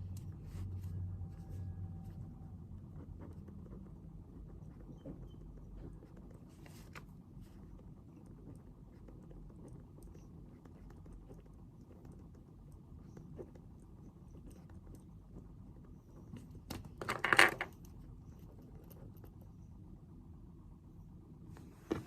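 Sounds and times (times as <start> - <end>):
small writing clicks: 0.0 - 0.4, 2.8 - 19.6
low room hum: 0.0 - 22.0.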